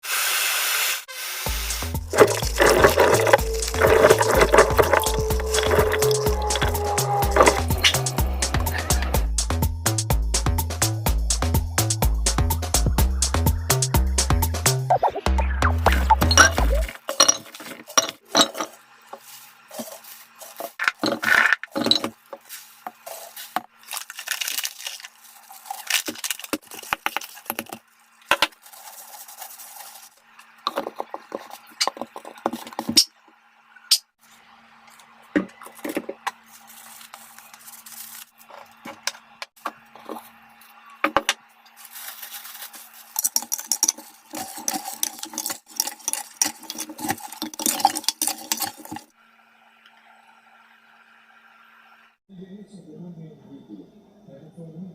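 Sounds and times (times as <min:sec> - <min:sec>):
kitchenware clinking and rattling: 0:02.1 - 0:08.1, 0:16.2 - 0:18.8, 0:20.6 - 0:22.2, 0:43.2 - 0:49.1.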